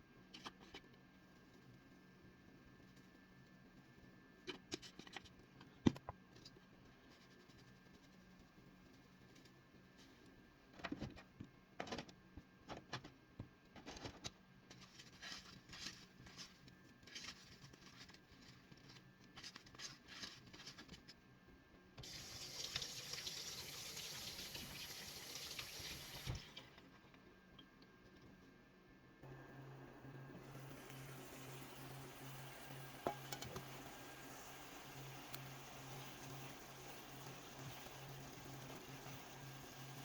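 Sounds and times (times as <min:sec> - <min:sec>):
kitchen tap running: 0:22.0 - 0:26.8, 0:30.4 - 0:38.3.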